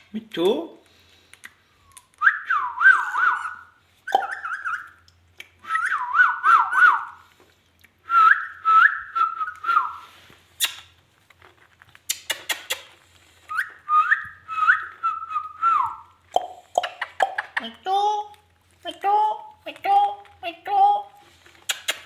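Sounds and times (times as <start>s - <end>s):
parakeet whistling rising notes: 2.5s - 5.0s
sharp bird clicks: 10.6s - 10.9s, 12.1s - 13.0s, 21.6s - 22.0s.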